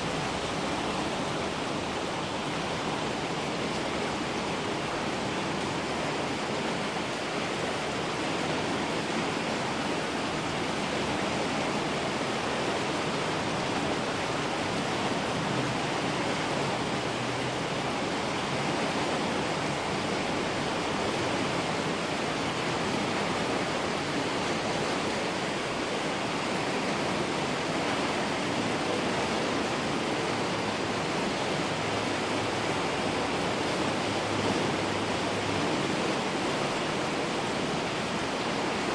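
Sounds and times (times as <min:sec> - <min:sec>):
creek water rushing: 0:00.0 - 0:38.9.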